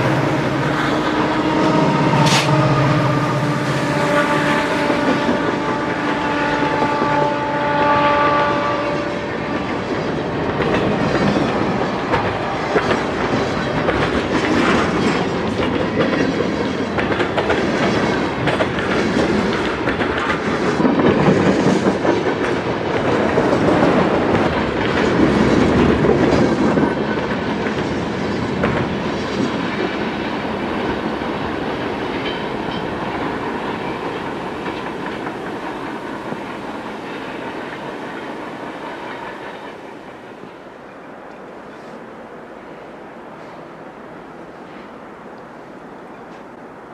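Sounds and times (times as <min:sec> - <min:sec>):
wheels clicking over rail joints: 0:00.0 - 0:07.0
locomotive horn chord: 0:00.0 - 0:10.0
train cars rumbling past: 0:00.0 - 0:46.9.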